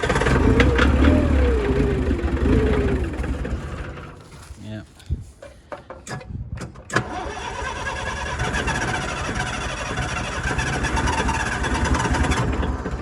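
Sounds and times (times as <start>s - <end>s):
diesel engine starting and running: 0.0s - 13.0s.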